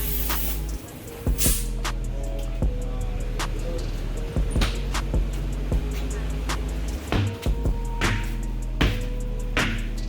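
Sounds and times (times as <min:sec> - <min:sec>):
deep bass line: 0:00.0 - 0:10.0
steady drum beat: 0:04.3 - 0:10.0.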